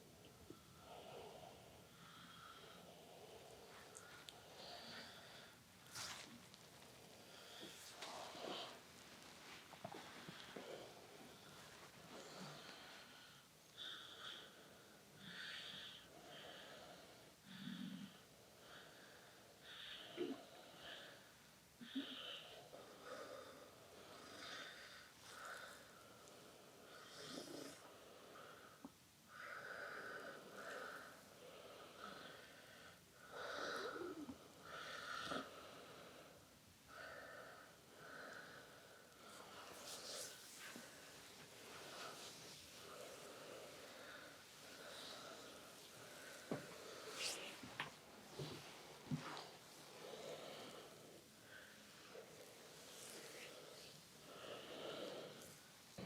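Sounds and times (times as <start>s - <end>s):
hands rubbing over skin: 39.7s - 40.8s, 47.0s - 47.7s.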